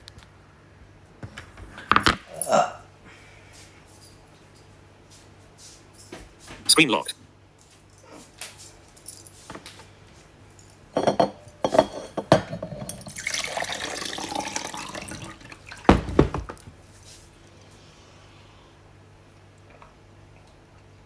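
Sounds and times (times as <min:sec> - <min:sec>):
glass containers clinking: 0:10.6 - 0:16.8
water pouring: 0:12.8 - 0:16.3
heavy thud of object set down: 0:15.9 - 0:16.8.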